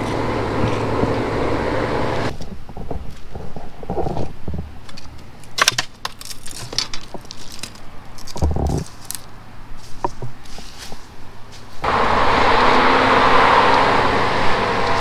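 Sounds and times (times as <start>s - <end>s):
small hard objects clinking: 5.6s - 10.0s.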